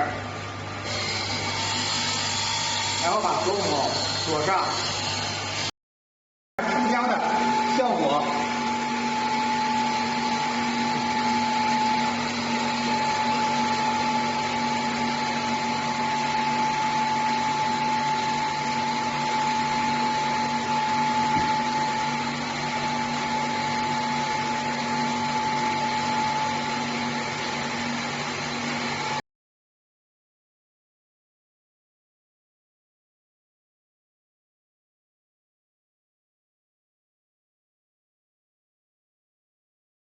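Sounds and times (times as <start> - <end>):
electric stone grinder humming: 0.8 - 5.7, 6.6 - 29.2.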